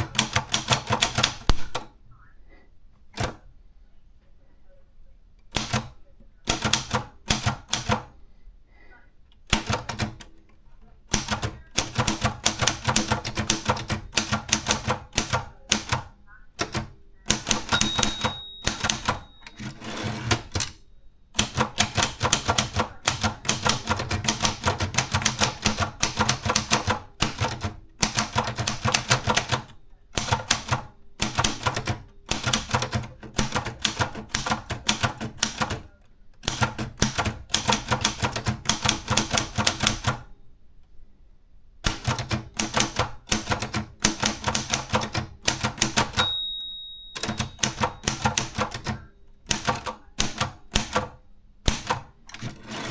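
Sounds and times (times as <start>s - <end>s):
typewriter keys clacking: 0.0s - 1.9s, 5.5s - 8.1s, 11.1s - 20.8s, 21.4s - 40.2s, 41.9s - 52.9s
typewriter bell ringing: 17.4s - 20.7s, 46.0s - 48.7s.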